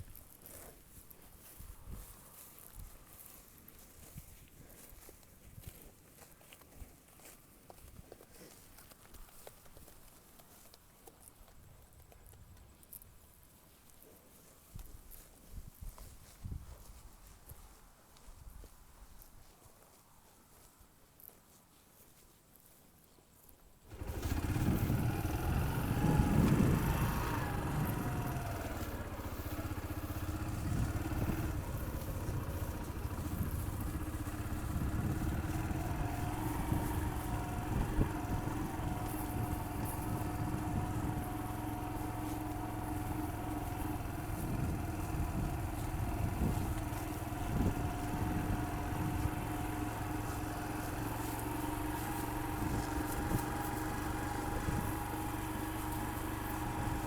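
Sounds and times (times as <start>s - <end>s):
motor humming: 23.9s - 57.0s.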